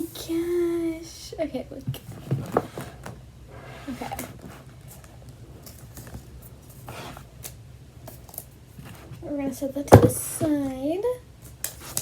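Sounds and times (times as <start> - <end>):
knocks and rustles of handling: 1.8 - 9.2, 9.9 - 10.8.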